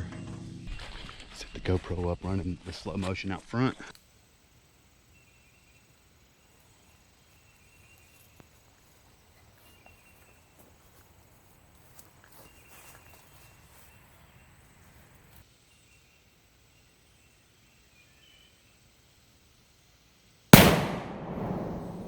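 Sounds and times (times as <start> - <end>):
faint insects chirping: 2.9 - 22.0.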